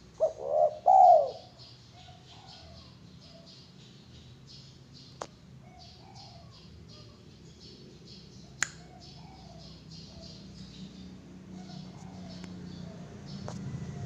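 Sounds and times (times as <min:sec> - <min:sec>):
dove cooing: 0:00.0 - 0:03.5, 0:05.6 - 0:07.2, 0:08.8 - 0:10.4, 0:11.5 - 0:13.1
sharp clicks: 0:08.6 - 0:08.8.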